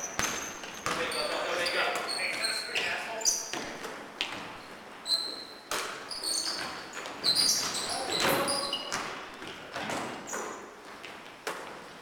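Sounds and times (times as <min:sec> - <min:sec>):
basketball bouncing: 0:00.0 - 0:02.1, 0:05.7 - 0:11.8
sneakers squeaking: 0:00.0 - 0:12.0.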